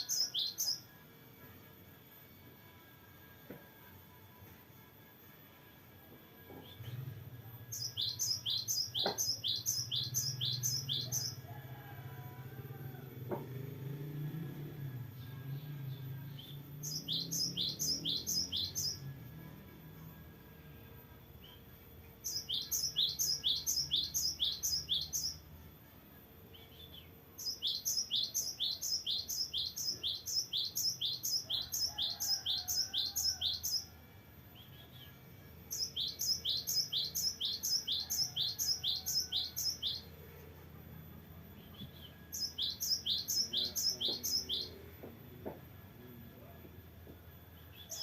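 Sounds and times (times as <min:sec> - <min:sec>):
bird singing rolling phrases: 0:00.0 - 0:00.9, 0:06.5 - 0:11.5, 0:14.3 - 0:19.1, 0:21.4 - 0:25.5, 0:26.5 - 0:33.9, 0:34.5 - 0:40.2, 0:41.4 - 0:46.2, 0:47.6 - 0:48.0.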